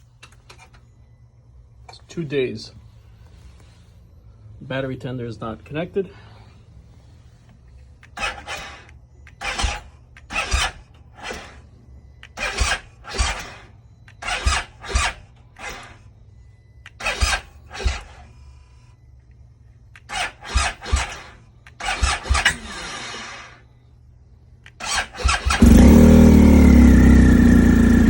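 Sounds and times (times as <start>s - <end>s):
engine starter cranking: 8.0s - 11.6s, 12.2s - 16.0s, 16.8s - 18.3s, 19.9s - 23.6s, 24.6s - 28.0s.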